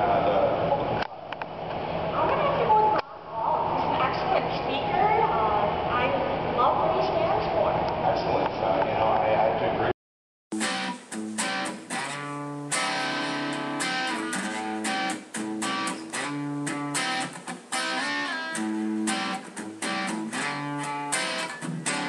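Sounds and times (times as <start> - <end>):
guitar picked and strummed: 10.5 - 22.0.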